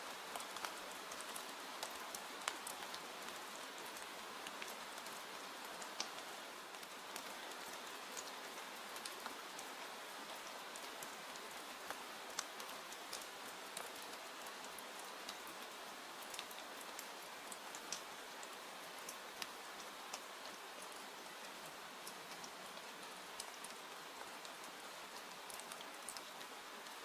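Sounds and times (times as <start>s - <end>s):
steady rain hiss: 0.0s - 27.0s
raindrops ticking: 11.9s - 27.0s.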